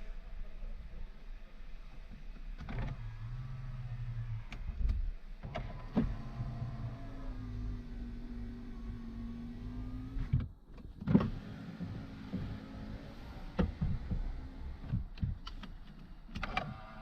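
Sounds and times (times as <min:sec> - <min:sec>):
sharp clicks and knocks: 0:13.6 - 0:16.8.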